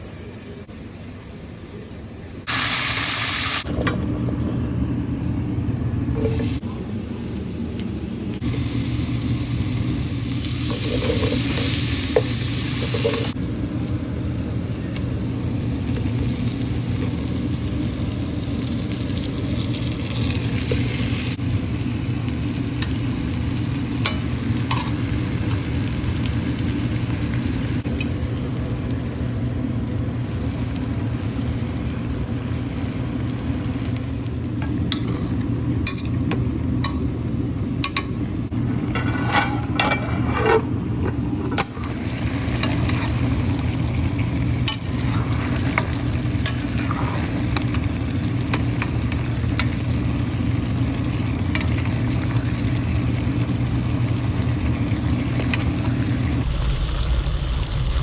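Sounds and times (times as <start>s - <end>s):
chicken sizzling in hot oil: 2.5s - 3.7s, 6.2s - 36.0s, 41.3s - 56.4s
utensil scraping a pot: 10.6s - 13.4s, 38.7s - 40.7s, 44.7s - 47.6s.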